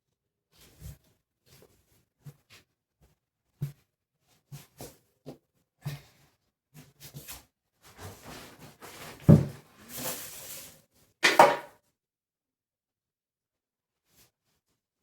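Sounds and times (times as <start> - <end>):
rustling: 8.0 - 10.8.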